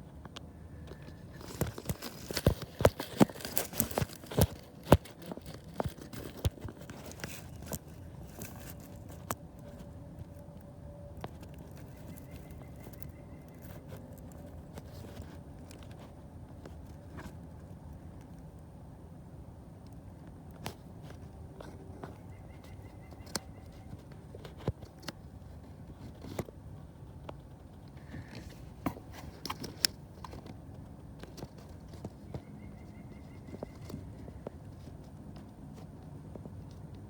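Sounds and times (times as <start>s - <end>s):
low steady hum: 0.0s - 37.0s.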